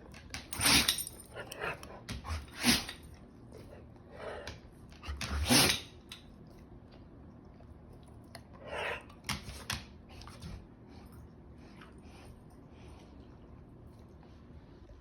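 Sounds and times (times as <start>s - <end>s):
dog sneezing: 0.5s - 1.1s, 2.4s - 3.1s, 5.3s - 6.0s.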